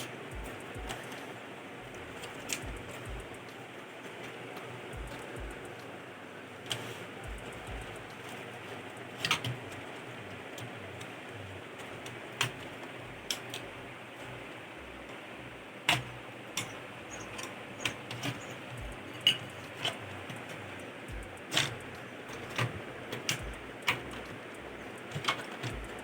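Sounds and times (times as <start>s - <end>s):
tools clicking on metal chassis: 0.0s - 5.9s, 6.6s - 11.1s, 15.9s - 26.0s
steady low hiss: 0.0s - 26.0s.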